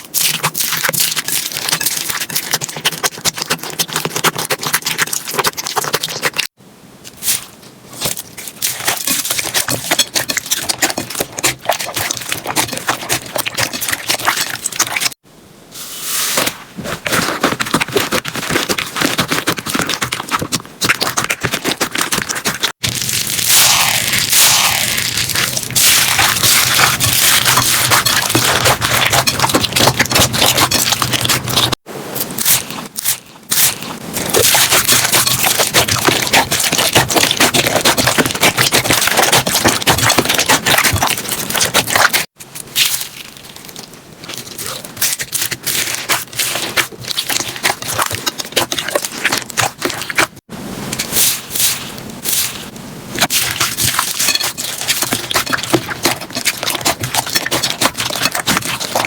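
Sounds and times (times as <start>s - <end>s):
slime squeezed with crackling pops: 17.9s - 50.4s.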